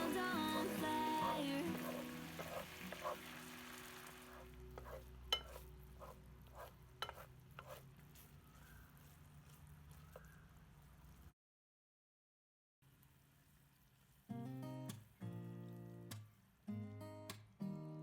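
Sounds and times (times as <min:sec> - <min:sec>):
food sizzling in frying pan: 0:00.0 - 0:05.6.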